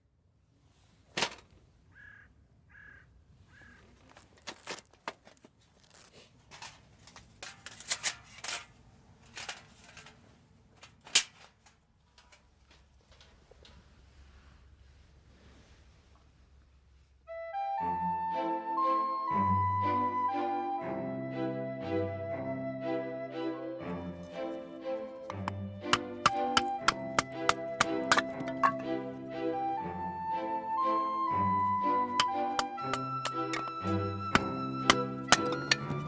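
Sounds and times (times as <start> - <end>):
bird chirping: 1.9 - 3.9
orchestral music: 17.3 - 36.0
clicks taps and scrapes: 25.3 - 28.9.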